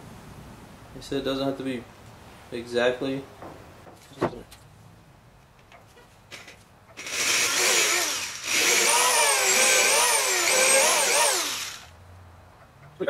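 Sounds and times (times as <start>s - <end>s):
light knocks: 3.4s - 4.6s
power drill boring into wood: 7.0s - 11.9s.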